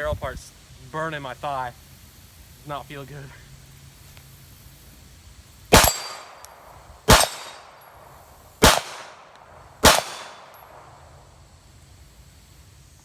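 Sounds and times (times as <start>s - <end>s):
pistol shots echoing: 5.7s - 7.9s, 8.6s - 11.0s.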